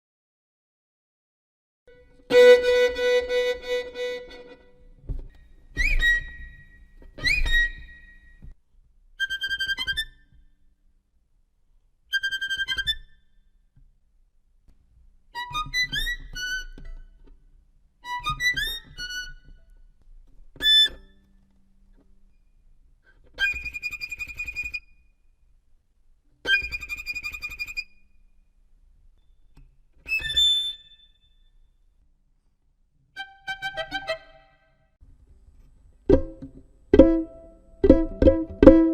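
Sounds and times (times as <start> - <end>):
violin sliding notes: 1.9 - 4.8, 33.2 - 34.8, 36.1 - 38.9
violin tremolo high notes: 37.0 - 38.9.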